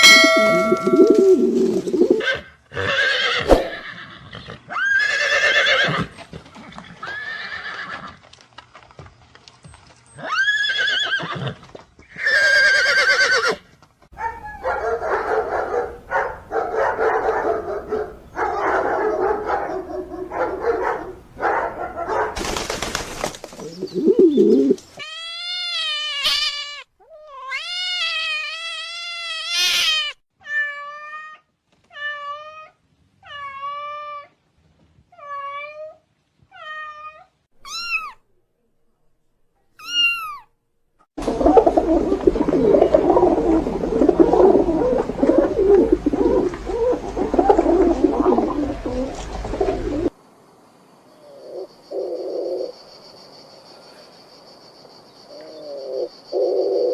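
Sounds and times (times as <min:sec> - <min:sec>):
cat meowing: 0:25.0 - 0:34.3, 0:35.2 - 0:38.2, 0:39.8 - 0:40.5.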